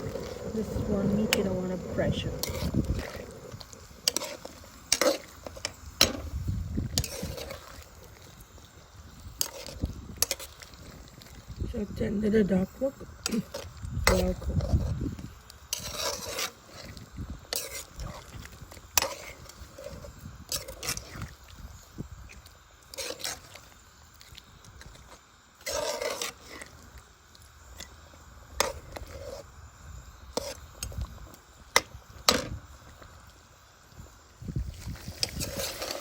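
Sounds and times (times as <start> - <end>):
utensil scraping a pot: 0.0 - 8.2, 9.3 - 10.6, 13.2 - 21.3, 22.9 - 23.6, 25.6 - 26.8, 28.6 - 29.5, 30.3 - 30.7, 35.2 - 36.0
low cooking rumble: 0.0 - 36.0.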